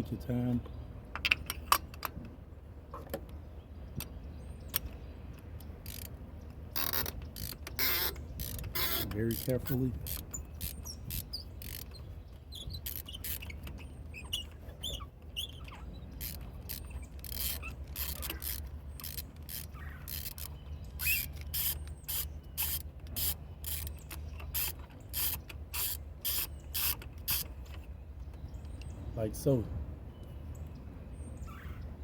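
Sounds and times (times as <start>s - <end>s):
ratchet clicking: 5.8s - 6.1s, 6.8s - 12.0s, 12.7s - 13.8s, 16.2s - 27.8s
short high squeaks: 6.8s - 27.9s.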